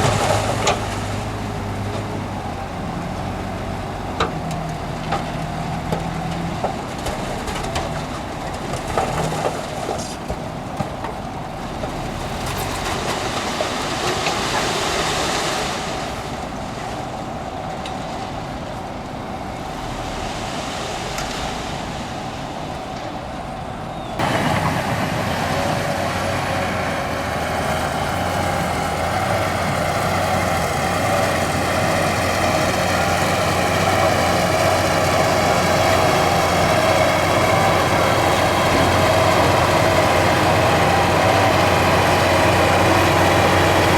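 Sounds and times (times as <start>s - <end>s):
diesel earthmoving machinery running: 0.0s - 43.9s
louder steady engine note: 23.6s - 43.9s.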